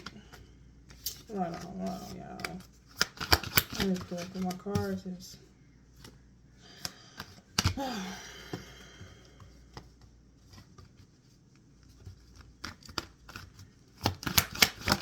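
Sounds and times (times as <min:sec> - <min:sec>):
cards shuffling and clicking: 0:00.0 - 0:05.0, 0:06.8 - 0:07.8, 0:08.5 - 0:15.0.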